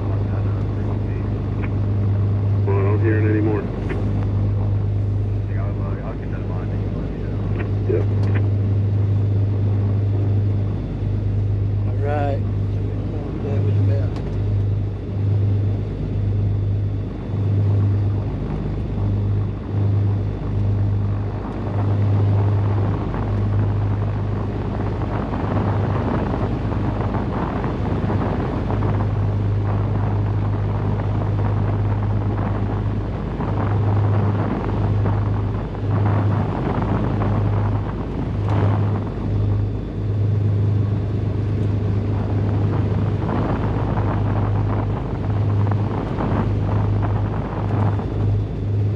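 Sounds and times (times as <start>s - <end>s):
propeller plane engines droning: 0.0s - 48.9s.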